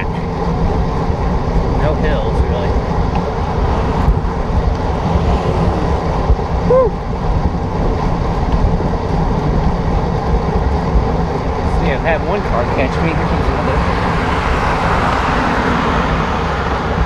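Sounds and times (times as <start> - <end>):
wind rushing over microphone: 0.0 - 17.0
person shouting woo: 6.6 - 7.0.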